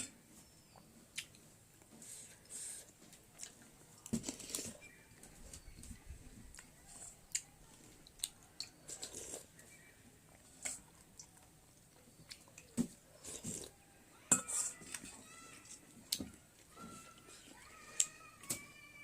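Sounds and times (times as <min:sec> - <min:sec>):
chewing: 0:06.5 - 0:13.8.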